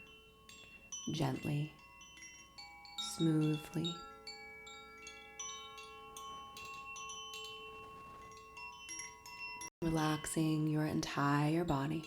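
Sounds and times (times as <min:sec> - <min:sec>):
metallic chimes ringing: 0:00.0 - 0:12.0.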